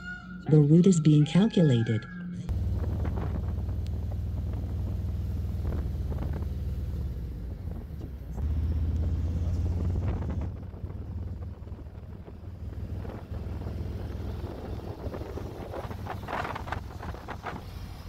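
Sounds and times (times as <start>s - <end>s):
motorcycle engine rumbling: 2.2s - 18.0s
wind on microphone: 9.8s - 17.8s.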